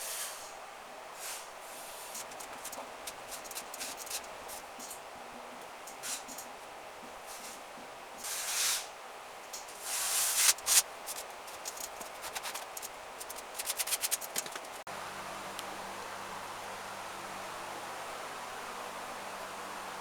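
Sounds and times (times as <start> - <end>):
steady low hum: 9.1 - 20.0
hand tool scraping plaster wall: 9.7 - 14.8.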